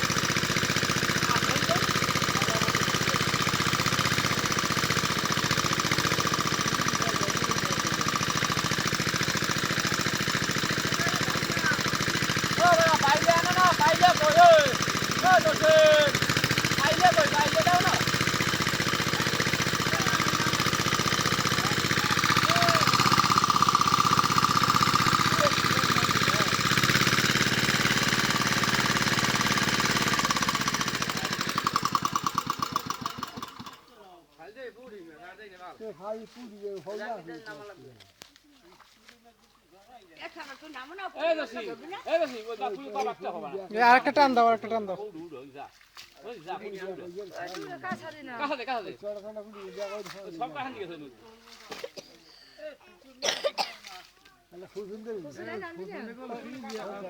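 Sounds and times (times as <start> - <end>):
small engine chugging: 0.0 - 34.1.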